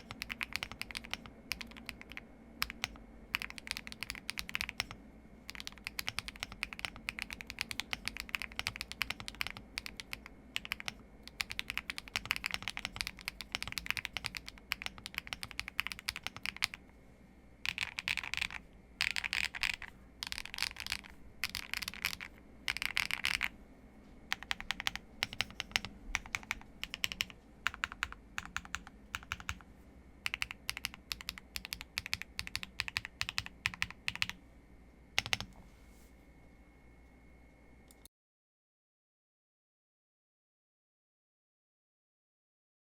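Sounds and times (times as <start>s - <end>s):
mechanical keyboard typing: 0.0s - 16.8s, 17.6s - 23.5s, 24.3s - 34.4s, 35.2s - 35.5s.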